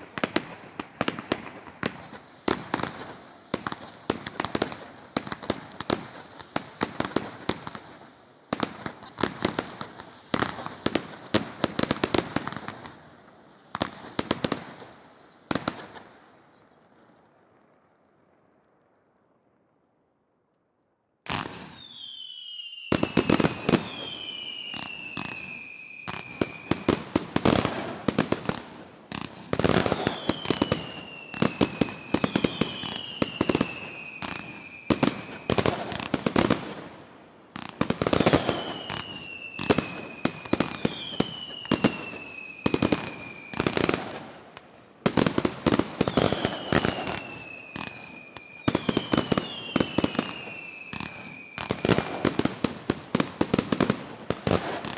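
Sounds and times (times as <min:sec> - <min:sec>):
firework bangs and crackling: 0:00.0 - 0:19.1, 0:21.2 - 0:54.9
firework whistles sliding down: 0:21.3 - 0:27.6, 0:29.1 - 0:36.6, 0:38.0 - 0:44.0, 0:46.0 - 0:52.2.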